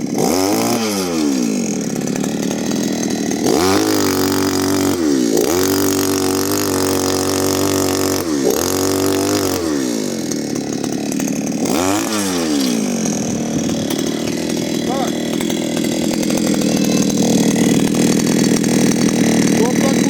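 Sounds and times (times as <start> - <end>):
small petrol engine revving: 0.0 - 20.0.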